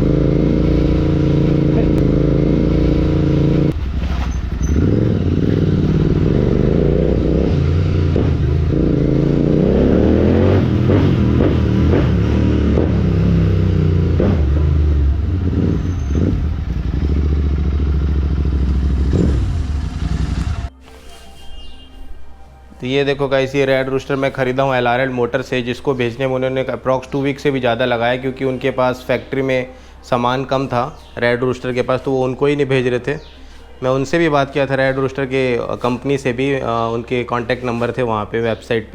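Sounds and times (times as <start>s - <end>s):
motorcycle engine revving: 0.0s - 20.7s.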